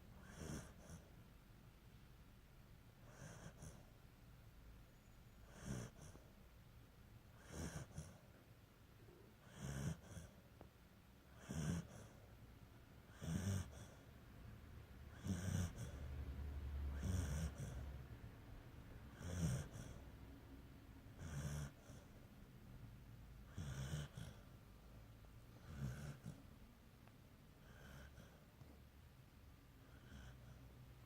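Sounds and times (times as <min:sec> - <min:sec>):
person snoring: 0:11.4 - 0:12.1, 0:23.5 - 0:24.4, 0:25.6 - 0:26.4.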